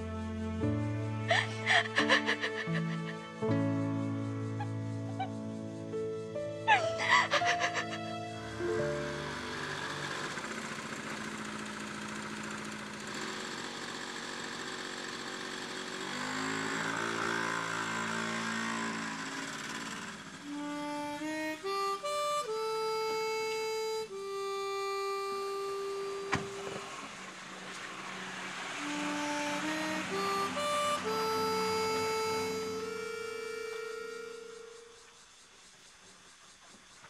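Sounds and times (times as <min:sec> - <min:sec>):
slow soft background music: 0:00.0 - 0:10.4, 0:20.4 - 0:26.7, 0:28.8 - 0:35.0.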